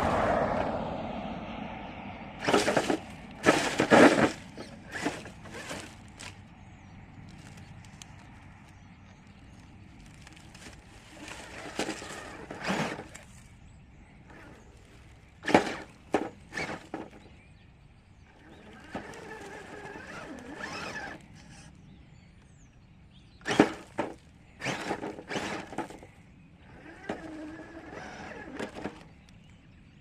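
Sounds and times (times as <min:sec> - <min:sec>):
rc truck knocking on rock: 0:02.4 - 0:06.3, 0:11.4 - 0:13.2, 0:15.4 - 0:17.3, 0:18.8 - 0:21.6, 0:23.4 - 0:26.1, 0:26.8 - 0:29.1
electric motor whirr: 0:02.4 - 0:06.4, 0:10.3 - 0:13.5, 0:14.3 - 0:17.2, 0:18.4 - 0:21.7, 0:23.4 - 0:29.1.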